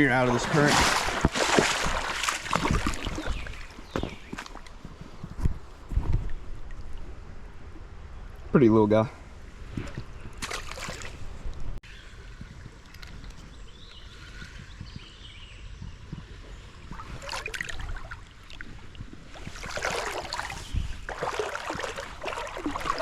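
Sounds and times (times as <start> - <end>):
splashing: 0.0 - 4.7, 10.4 - 11.3, 16.9 - 23.0
creek water running: 0.0 - 5.1, 16.3 - 23.0.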